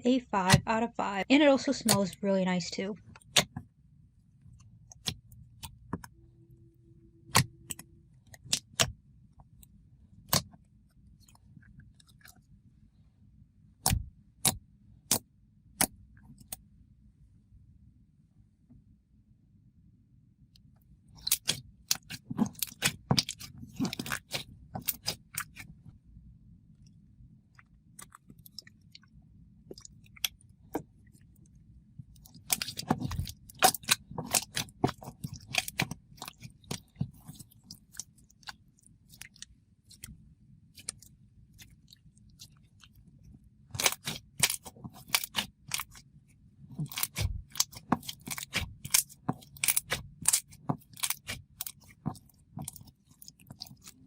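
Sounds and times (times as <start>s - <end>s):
slime squished with sticky pops: 21.2s - 25.7s, 32.1s - 39.4s, 43.7s - 46.0s, 46.7s - 54.0s.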